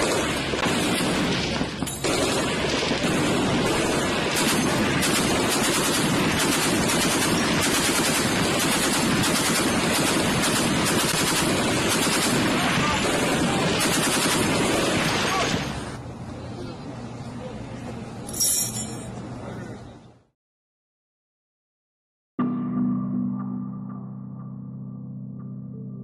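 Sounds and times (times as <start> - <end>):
heavy machine gun automatic fire: 0.0 - 15.8.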